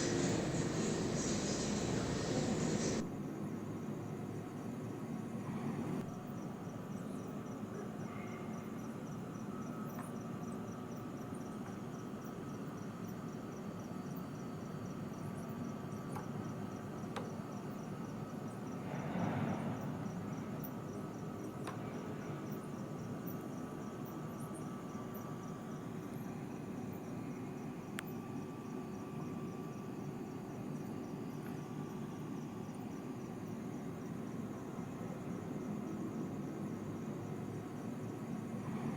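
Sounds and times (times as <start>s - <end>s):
low rushing noise: 0.0s - 3.1s.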